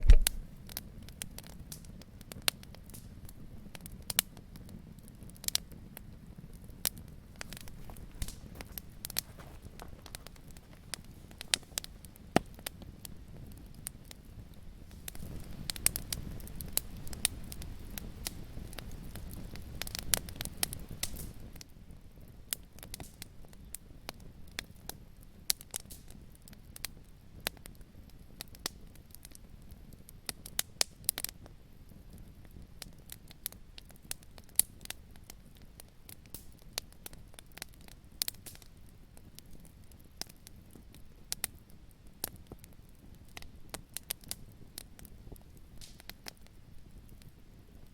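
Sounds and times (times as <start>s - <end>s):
sharp thump: 0.0s - 0.4s
rush of flames: 0.0s - 0.5s, 7.2s - 12.8s
wood fire crackling: 0.0s - 47.9s.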